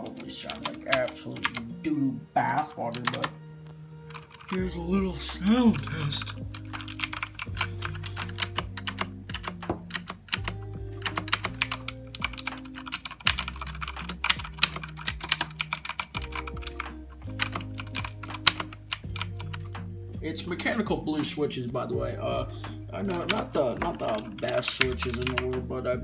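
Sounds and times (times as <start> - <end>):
mechanical keyboard clacking: 0.0 - 1.7, 2.9 - 3.4, 4.1 - 4.6, 5.7 - 19.7, 23.1 - 25.5
background music with low notes: 0.0 - 26.0.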